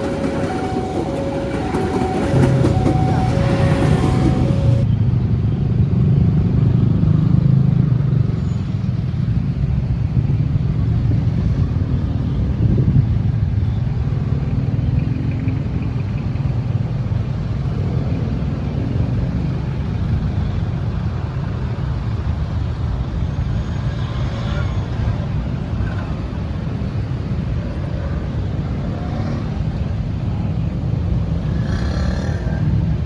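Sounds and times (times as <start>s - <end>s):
two-tone horn: 0.0s - 4.8s.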